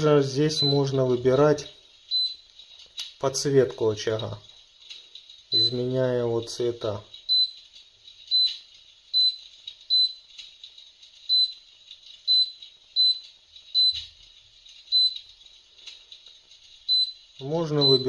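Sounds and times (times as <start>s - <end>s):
control panel beeping: 0.3s - 1.0s, 2.1s - 2.6s, 5.5s - 5.9s, 7.2s - 7.7s, 8.3s - 10.3s, 11.3s - 14.2s, 14.9s - 15.3s, 16.8s - 18.0s.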